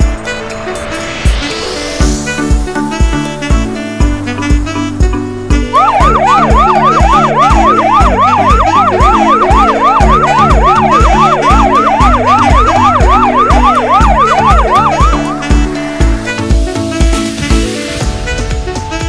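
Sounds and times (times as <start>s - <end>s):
swing music with drum beat: 0.9s - 19.0s
level crossing alarm dinging: 5.8s - 15.7s.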